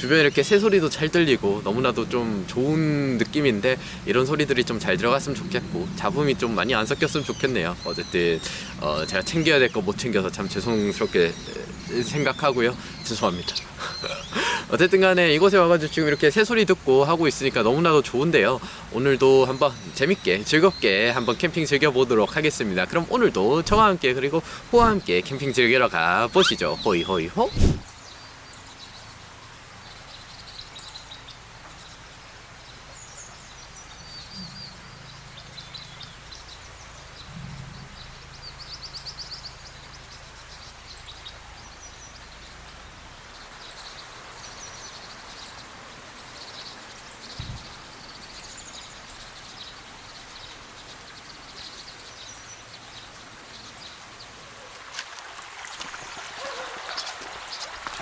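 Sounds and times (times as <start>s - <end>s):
mountain stream rushing: 0.0s - 27.9s, 53.9s - 58.0s
small birds chirping: 0.0s - 58.0s.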